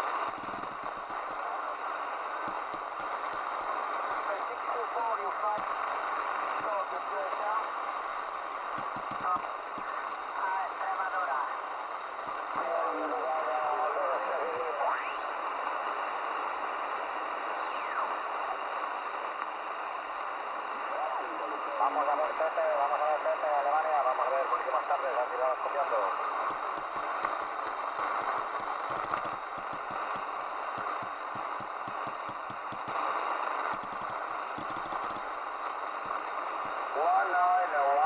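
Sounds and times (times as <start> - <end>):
crackling clicks: 0.0 - 7.0, 7.6 - 10.3, 12.0 - 12.9, 25.9 - 37.0
radio static hiss: 0.0 - 38.0.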